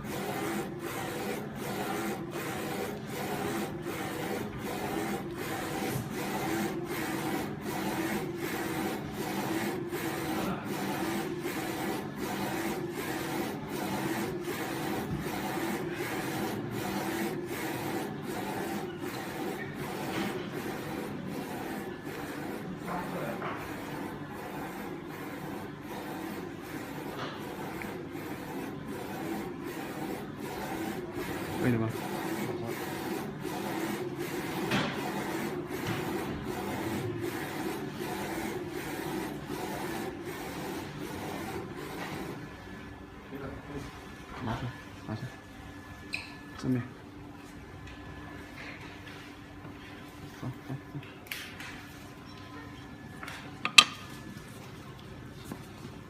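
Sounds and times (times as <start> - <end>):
print head carriage sweeping: 0.0 - 43.0
printer mechanical whir: 0.0 - 56.0.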